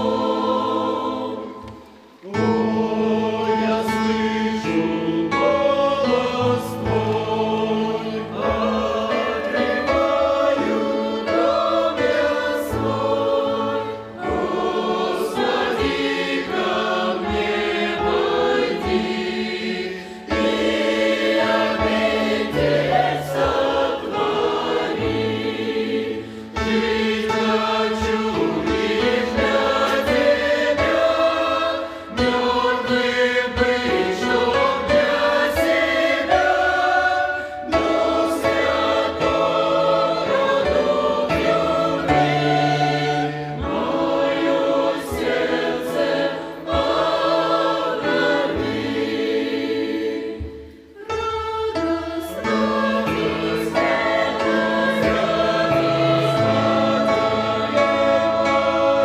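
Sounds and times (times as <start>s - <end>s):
choir singing: 0.0s - 59.0s.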